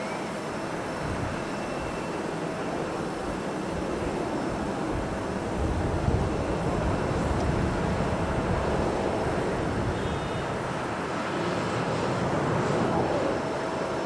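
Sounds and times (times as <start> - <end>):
jet engines roaring: 0.0 - 14.0
wind buffeting microphone: 0.5 - 14.0.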